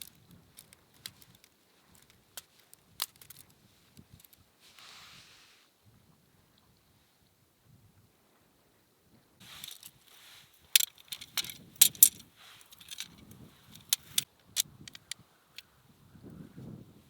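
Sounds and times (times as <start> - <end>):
clicks of small hard objects: 0.0 - 4.4, 9.4 - 15.2
soft rustling: 0.0 - 5.7, 9.4 - 14.3.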